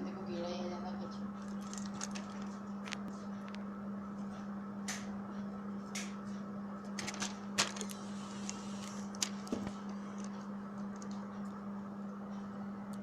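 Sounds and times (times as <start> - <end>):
steady low hum: 0.0 - 13.0
packaging clicks and rustles: 1.4 - 3.0, 7.0 - 11.3.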